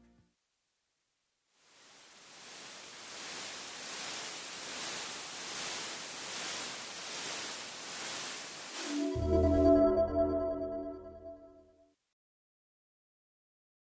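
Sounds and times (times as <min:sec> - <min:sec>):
pulsing high-pitched hiss: 0:01.6 - 0:10.1.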